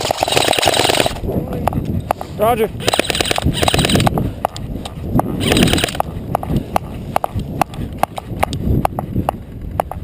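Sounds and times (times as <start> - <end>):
running footsteps: 3.0 - 10.0.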